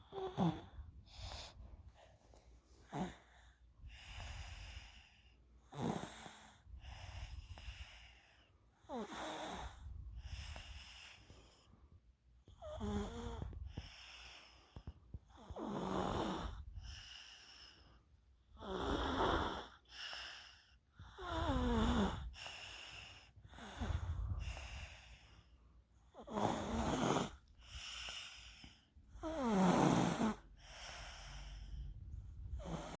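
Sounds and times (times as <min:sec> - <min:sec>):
snoring breaths: 0:00.0 - 0:33.0.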